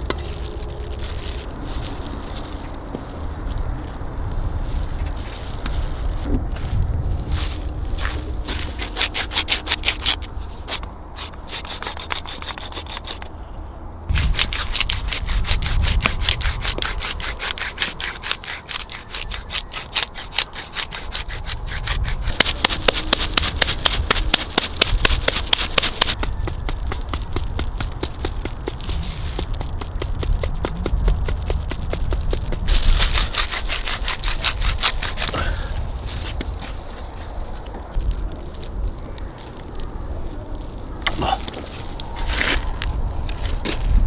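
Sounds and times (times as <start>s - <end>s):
rapid rhythmic scraping: 14.1s - 35.4s.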